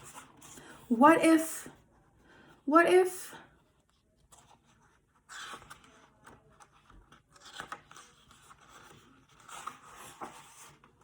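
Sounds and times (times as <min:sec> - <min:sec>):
paper page rustling and turning: 0:03.8 - 0:11.0.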